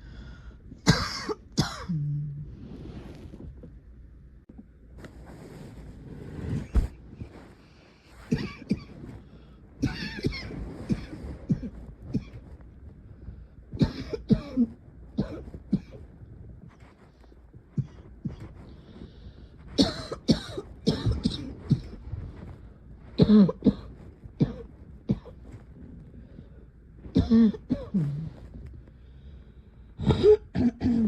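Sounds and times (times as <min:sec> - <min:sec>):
person coughing: 0:00.8 - 0:02.3, 0:08.3 - 0:09.0, 0:09.8 - 0:12.5, 0:13.8 - 0:16.0, 0:19.8 - 0:22.0, 0:23.2 - 0:25.4, 0:27.1 - 0:28.4, 0:30.0 - 0:31.0.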